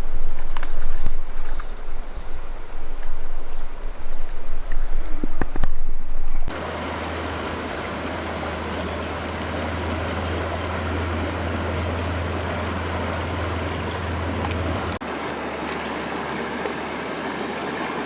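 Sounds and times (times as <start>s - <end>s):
wind buffeting microphone: 0.0s - 6.5s
river water flowing: 0.0s - 18.0s.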